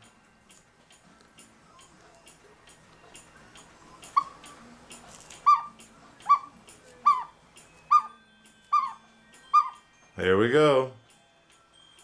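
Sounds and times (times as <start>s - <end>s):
clock ticking: 1.8s - 9.9s
animal yipping: 4.1s - 4.5s, 5.4s - 9.9s.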